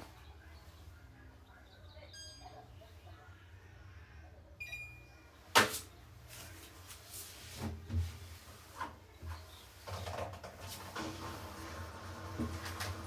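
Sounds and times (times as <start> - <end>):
knocks and rubbing on washing machine: 7.5 - 13.0.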